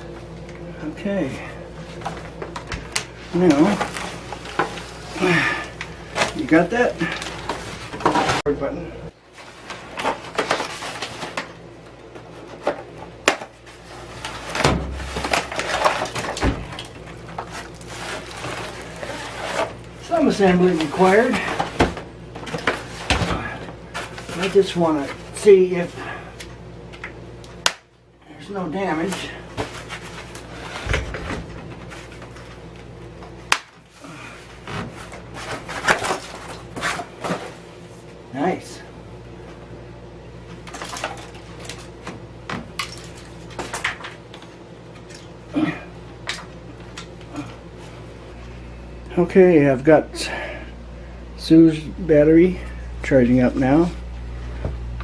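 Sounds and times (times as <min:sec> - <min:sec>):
packaging rustling: 0:01.8 - 0:08.4, 0:09.3 - 0:25.4, 0:34.4 - 0:37.7.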